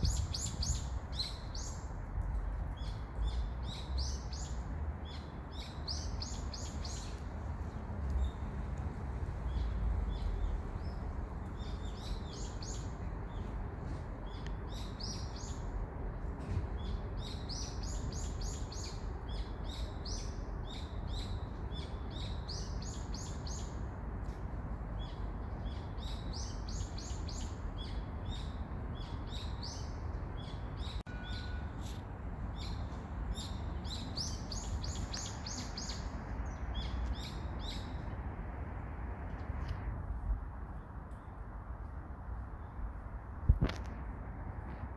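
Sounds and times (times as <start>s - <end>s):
songbird chirping: 25.0s - 38.0s.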